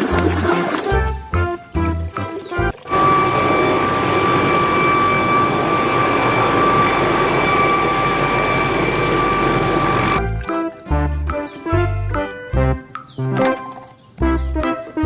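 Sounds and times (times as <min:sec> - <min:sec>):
jet engine roaring with whine: 0:02.8 - 0:10.2.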